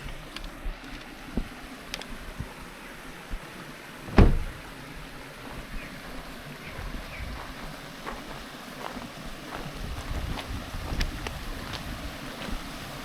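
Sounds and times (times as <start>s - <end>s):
steady outdoor noise: 0.0s - 13.0s
loud short thump: 4.1s - 4.6s.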